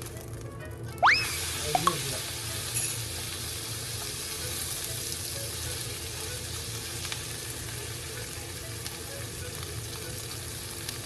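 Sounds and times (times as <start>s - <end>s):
food sizzling in oil: 0.0s - 11.0s.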